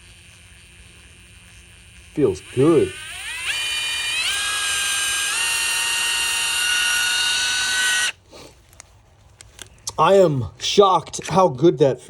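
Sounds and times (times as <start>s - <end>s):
impact wrench motor whine: 0.0s - 8.2s.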